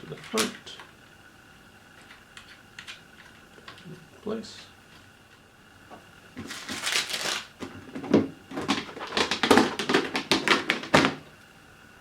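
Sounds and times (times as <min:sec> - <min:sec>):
plastic scraping rustle: 0:06.4 - 0:11.2.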